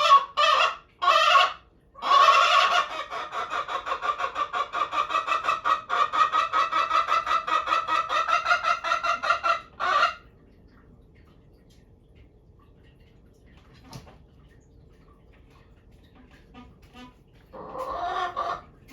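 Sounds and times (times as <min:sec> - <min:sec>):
chicken cackling and clucking: 0:00.0 - 0:10.3, 0:16.2 - 0:18.8.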